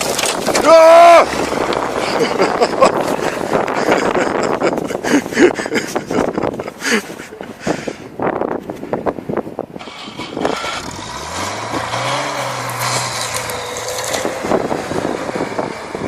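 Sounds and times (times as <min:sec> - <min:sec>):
engine revving: 0:00.0 - 0:03.7, 0:09.8 - 0:16.0.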